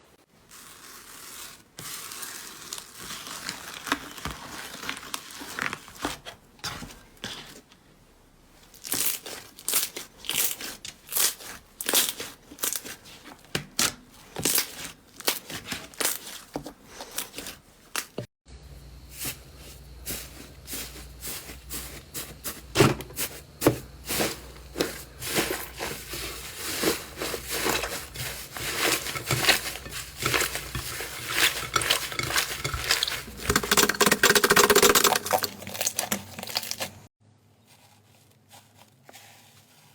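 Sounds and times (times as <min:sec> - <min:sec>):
slime crackling and popping: 0:28.7 - 0:37.0.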